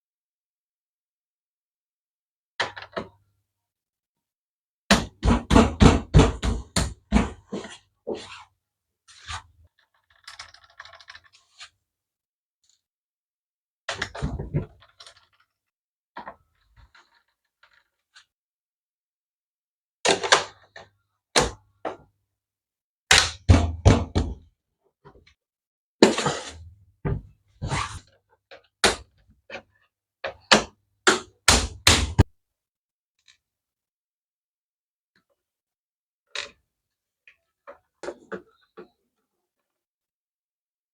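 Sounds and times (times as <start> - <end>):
plastic casing knocks and thunks: 4.9 - 7.4, 23.4 - 24.4.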